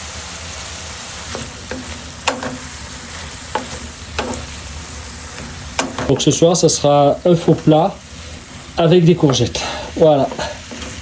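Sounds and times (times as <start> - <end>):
vegetables sizzling in a pan: 0.0 - 11.0
utensil knocking against pan: 1.3 - 2.8, 3.5 - 4.6, 5.7 - 6.4.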